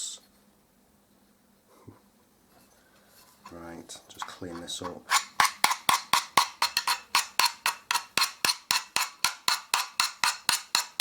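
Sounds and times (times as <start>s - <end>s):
hand file rasping on metal: 4.2s - 11.0s.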